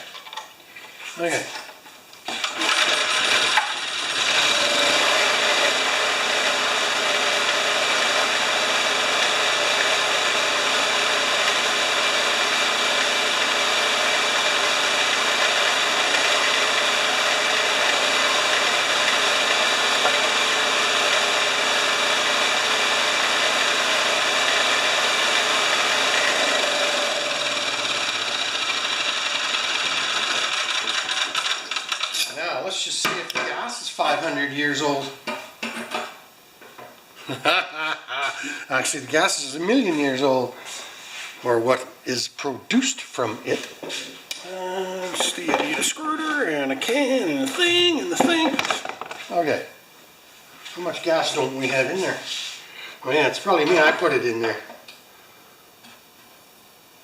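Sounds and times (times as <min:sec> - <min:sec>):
generator engine running: 0:02.5 - 0:31.8.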